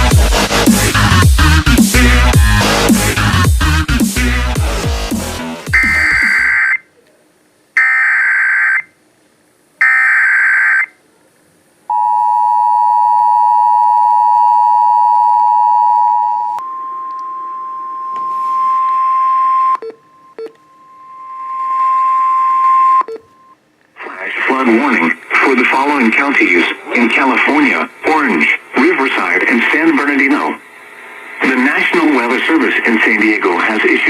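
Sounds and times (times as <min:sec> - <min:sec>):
two-tone attention signal: 0:05.7 - 0:06.7, 0:11.9 - 0:23.6
steady high tone: 0:05.7 - 0:06.8, 0:11.9 - 0:23.6
bursts of data tones: 0:05.7 - 0:06.9, 0:16.6 - 0:23.6
static hiss: 0:23.9 - 0:34.0.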